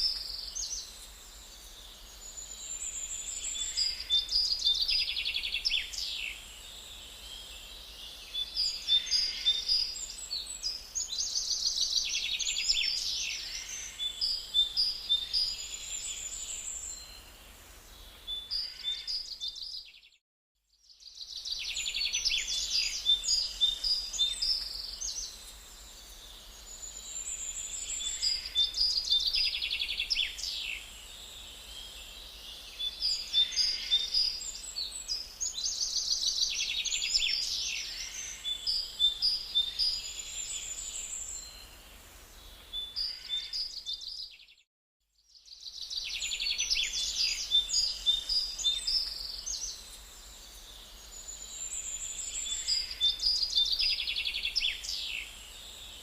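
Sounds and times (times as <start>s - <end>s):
faint background hiss: 0.0s - 19.8s, 21.0s - 44.2s, 45.4s - 56.0s
songbirds singing: 0.0s - 20.2s, 20.8s - 56.0s.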